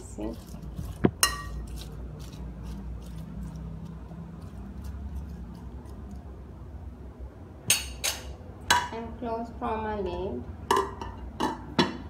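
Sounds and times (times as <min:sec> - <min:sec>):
spoon stirring vegetables in dish: 0:00.0 - 0:06.3.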